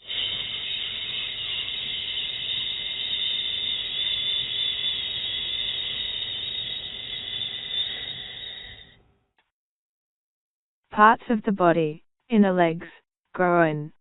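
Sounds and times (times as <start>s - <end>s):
person exhaling shhh hiss: 0.0s - 8.9s.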